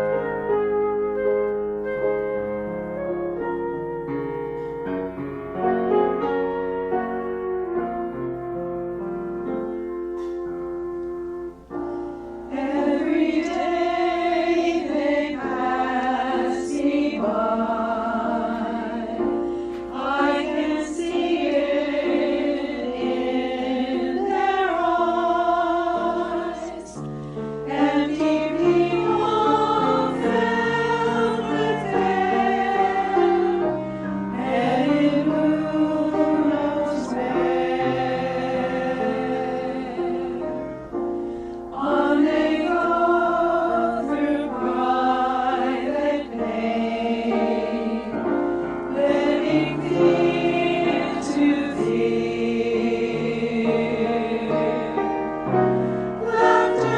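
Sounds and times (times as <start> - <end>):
choir singing: 0.0 - 0.6, 11.8 - 41.0, 41.6 - 56.9.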